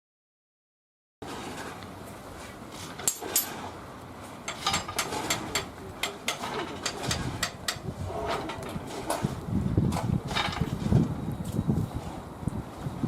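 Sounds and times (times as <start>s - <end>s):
low rumble of locomotive: 3.7s - 13.0s
steam locomotive metallic clanks: 4.5s - 8.6s.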